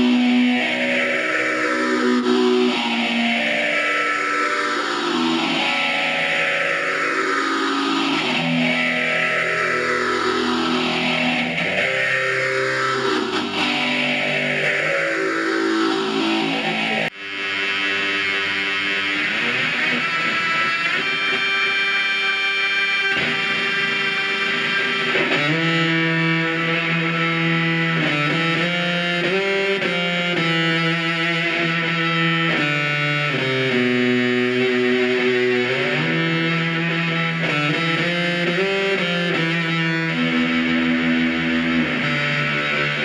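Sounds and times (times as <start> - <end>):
distorted electric guitar: 0.0 - 43.0.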